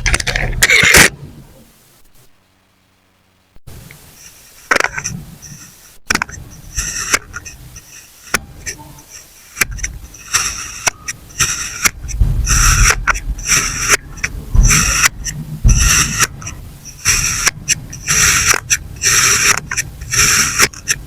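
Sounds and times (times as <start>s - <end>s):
blade slicing sand: 4.2s - 21.0s.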